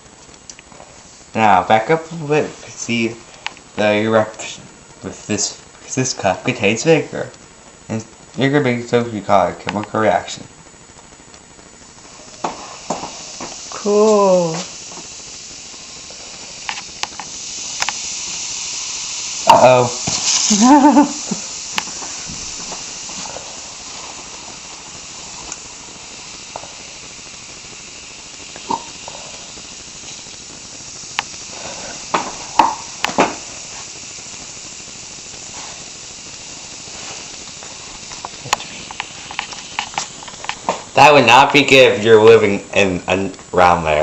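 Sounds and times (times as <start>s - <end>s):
fizzing hiss: 0.0s - 11.0s, 11.6s - 44.0s
short pops: 10.8s - 13.8s, 14.5s - 41.0s.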